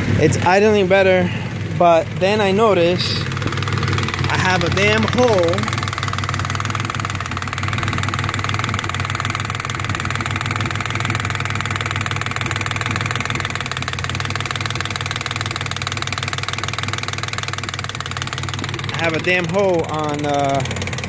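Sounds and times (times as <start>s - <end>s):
car engine idling: 0.0s - 21.0s
exhaust leak ticking: 0.0s - 21.0s.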